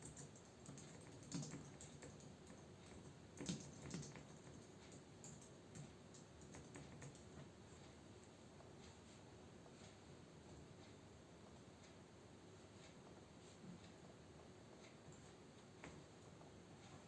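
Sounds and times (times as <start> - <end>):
typing on computer keyboard: 0.0 - 7.4.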